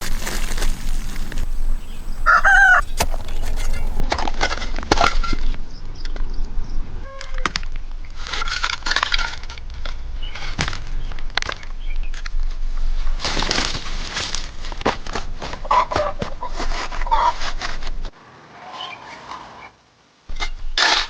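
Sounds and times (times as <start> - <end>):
chickens calling: 0.6 - 4.0, 15.6 - 17.5.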